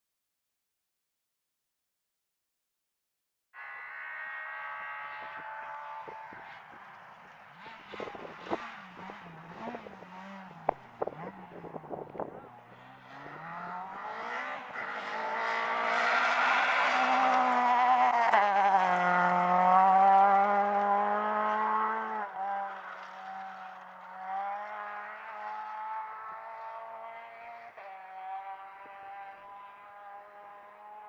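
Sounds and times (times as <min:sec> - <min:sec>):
racing car engine passing by: 0:03.6 - 0:31.0.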